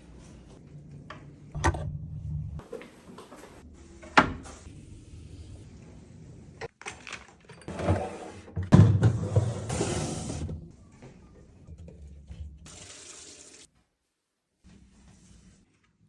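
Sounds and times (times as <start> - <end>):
kitchen items scraping and clattering: 6.4 - 10.7.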